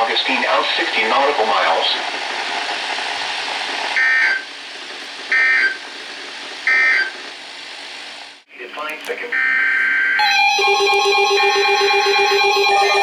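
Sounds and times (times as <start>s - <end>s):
radio hiss: 0.0s - 10.1s.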